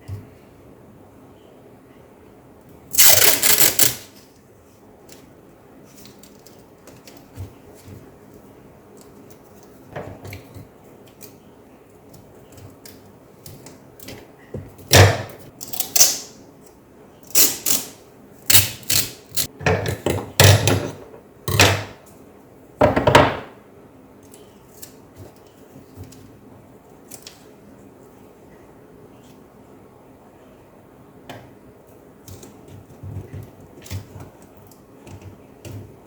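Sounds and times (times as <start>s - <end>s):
tape ripping off roll: 2.9s - 4.2s.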